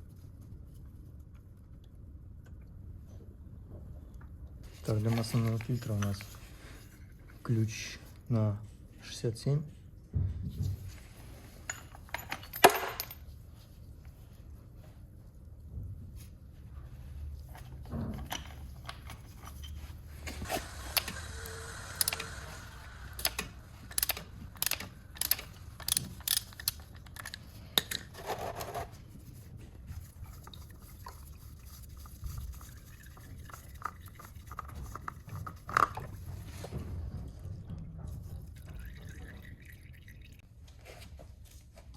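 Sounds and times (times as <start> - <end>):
metal wrench clicking and scraping: 20.4 - 28.8.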